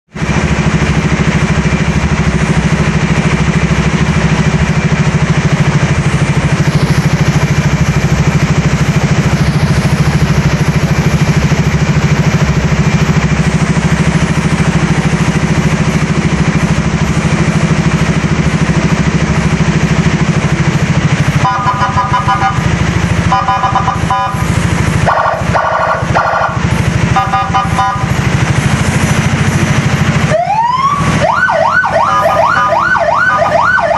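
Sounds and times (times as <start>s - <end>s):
scooter engine running: 0.2s - 33.9s
siren horn tones: 21.4s - 28.2s, 30.3s - 33.9s.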